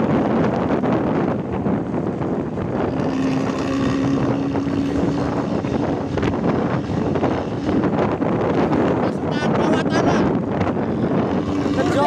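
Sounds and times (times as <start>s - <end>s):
vehicle engines in traffic: 0.0s - 12.0s
wind buffeting microphone: 0.0s - 12.0s.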